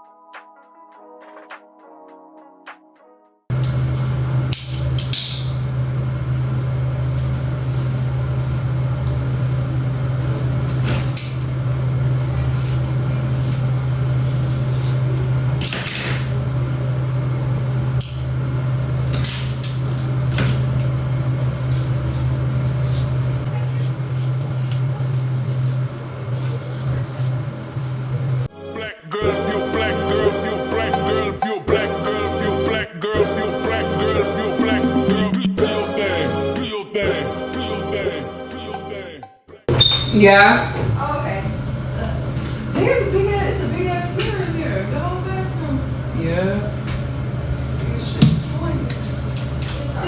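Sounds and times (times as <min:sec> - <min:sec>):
steady electric hum: 0:03.5 - 0:28.5, 0:39.7 - 0:50.0.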